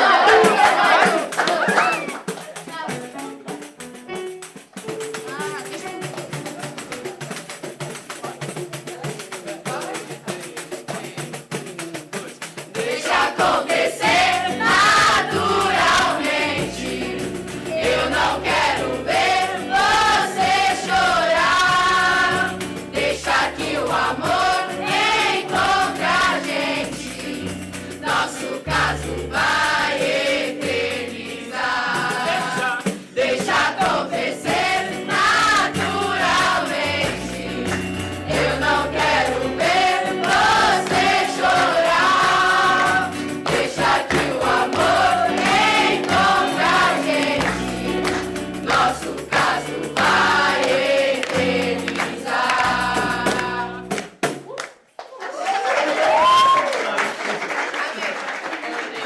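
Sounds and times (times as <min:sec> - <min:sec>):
children's choir singing: 0:00.0 - 0:02.1, 0:12.8 - 0:54.0
hand percussion: 0:00.0 - 0:54.6.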